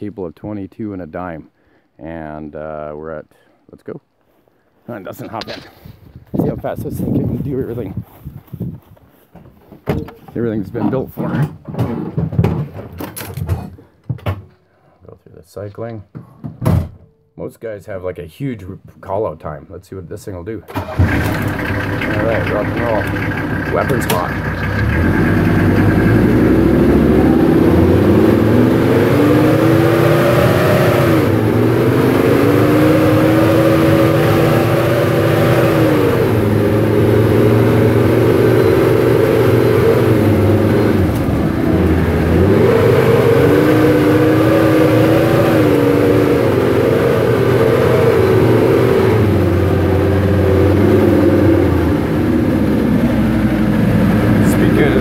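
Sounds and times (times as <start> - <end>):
tracked vehicle engine under load: 20.7 - 55.0.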